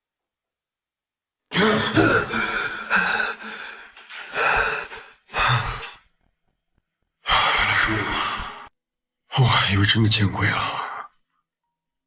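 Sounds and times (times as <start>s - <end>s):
man gasping and breathing hard: 1.5s - 6.2s.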